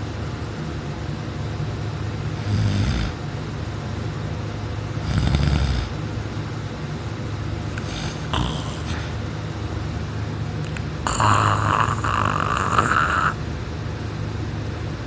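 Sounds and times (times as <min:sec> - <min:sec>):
person snoring: 0:02.4 - 0:03.2, 0:05.0 - 0:06.0, 0:07.7 - 0:09.2, 0:10.7 - 0:13.4.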